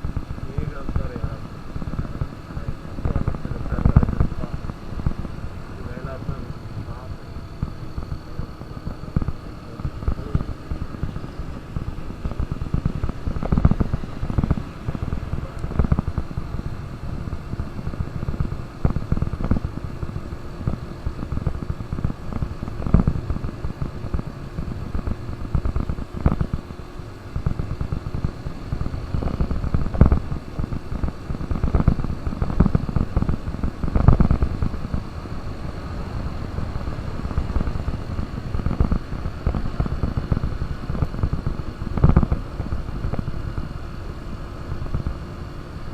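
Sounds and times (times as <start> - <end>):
motorcycle engine running: 0.0 - 45.9
wind buffeting microphone: 0.0 - 45.9.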